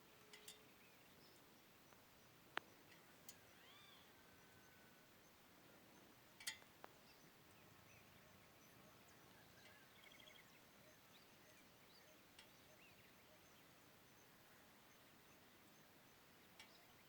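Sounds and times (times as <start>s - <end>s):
small bird chirps: 0.2s - 17.0s
high bird trill: 3.3s - 4.8s.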